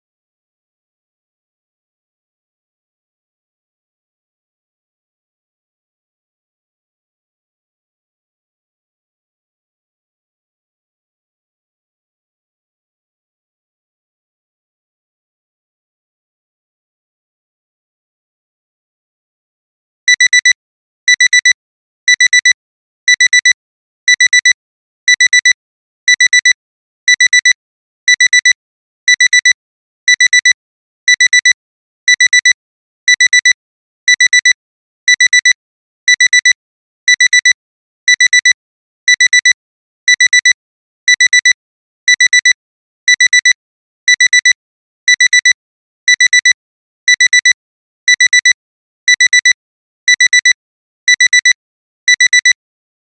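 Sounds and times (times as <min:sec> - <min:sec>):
alarm clock beeping: 0:20.1 - 0:20.5, 0:21.1 - 0:21.5, 0:22.1 - 0:22.5, 0:23.1 - 0:24.5, 0:25.1 - 0:25.5, 0:26.1 - 0:26.5, 0:27.1 - 0:27.5, 0:28.1 - 0:34.5, 0:35.1 - 0:35.5, 0:36.1 - 0:42.5, 0:43.1 - 0:52.6.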